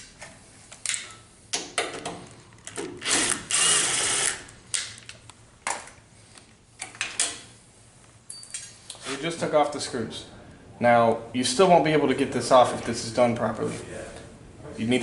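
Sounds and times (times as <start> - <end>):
power driver running: 3.0 - 4.5.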